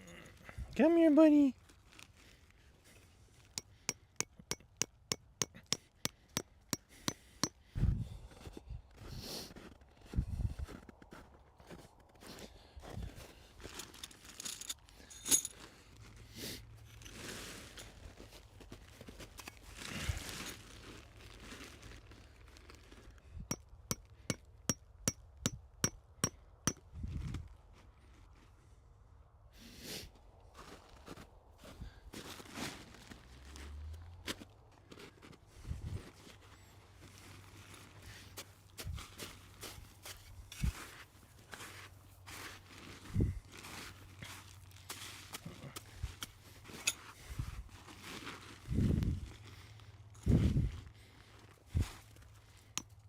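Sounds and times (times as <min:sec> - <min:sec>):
hammer striking metal tent stake: 0:03.6 - 0:07.6, 0:23.5 - 0:26.8
light metallic clinks: 0:14.4 - 0:15.6.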